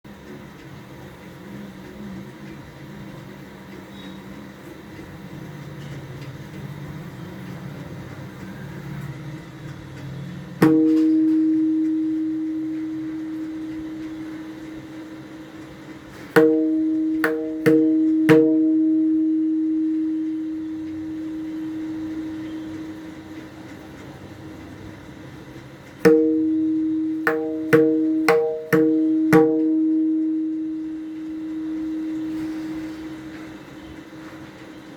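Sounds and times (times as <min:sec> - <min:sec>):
drum head strokes ringing: 0:10.5 - 0:34.9
low hum: 0:10.6 - 0:23.9, 0:26.0 - 0:34.8.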